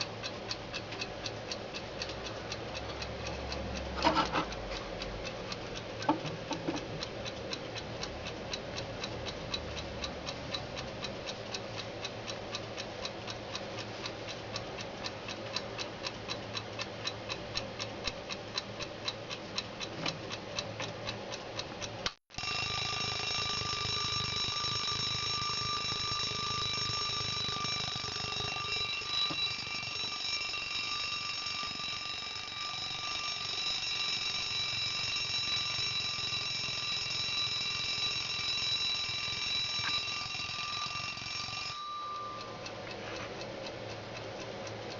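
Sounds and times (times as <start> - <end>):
alarm clock ticking: 0.0 - 44.9
alarm clock ringing: 22.4 - 42.8.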